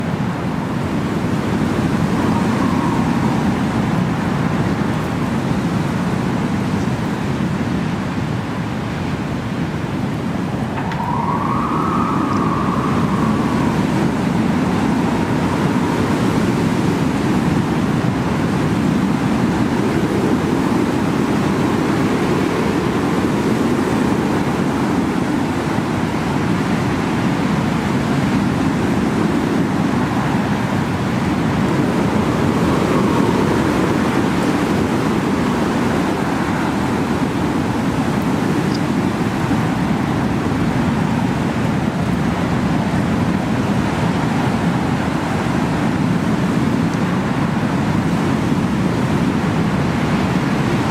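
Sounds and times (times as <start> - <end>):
strong wind gusts: 0.0 - 50.9
brief high tone: 10.8 - 15.0.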